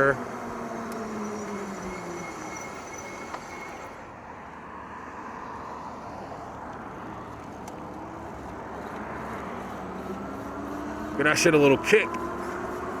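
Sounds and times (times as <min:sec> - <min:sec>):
faint high steady tone: 0:00.0 - 0:04.1.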